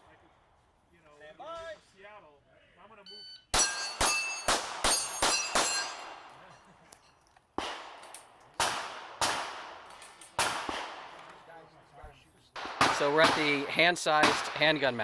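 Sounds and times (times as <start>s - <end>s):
steel targets ringing: 3.6s - 6.2s
pistol shots: 3.6s - 6.3s, 7.6s - 11.4s, 12.6s - 14.9s.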